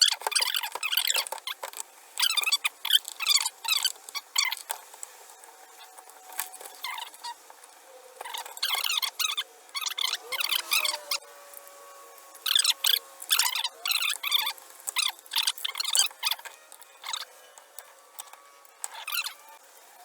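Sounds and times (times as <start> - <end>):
sped-up squeaky chatter: 8.0 - 20.0.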